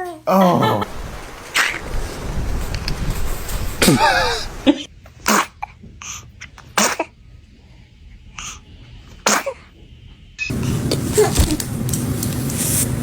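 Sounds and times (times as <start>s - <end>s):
baby sneezing: 5.3s - 5.6s, 6.8s - 7.1s, 9.2s - 9.7s, 10.7s - 11.6s.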